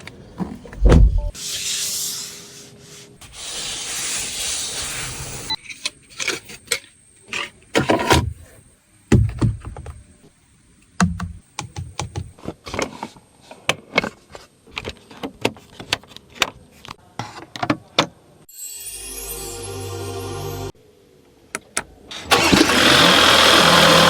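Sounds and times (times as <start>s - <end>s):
heavy low thuds: 0.7s - 1.4s.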